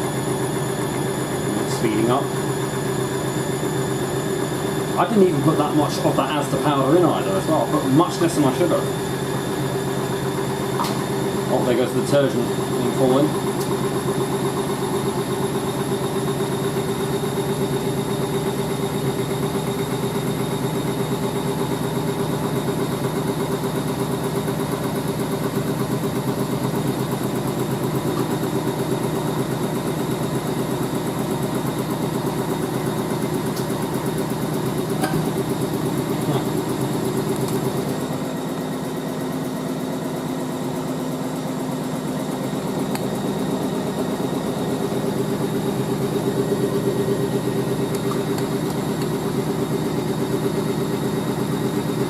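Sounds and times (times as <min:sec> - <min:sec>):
washing machine spinning: 0:00.0 - 0:52.0.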